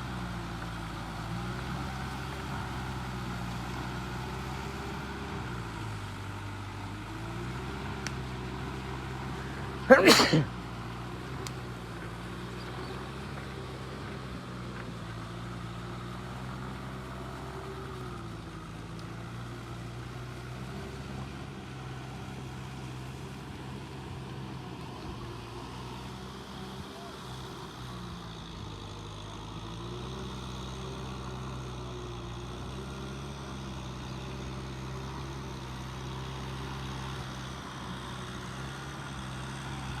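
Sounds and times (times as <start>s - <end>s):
engine running: 0.0s - 40.0s.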